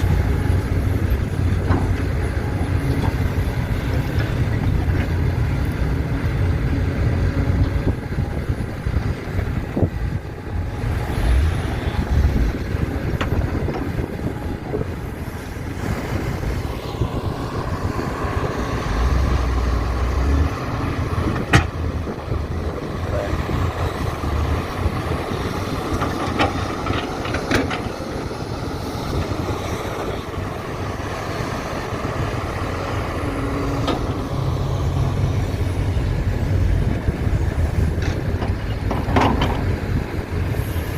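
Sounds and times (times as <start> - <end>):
diesel engines under load: 0.0 - 40.9.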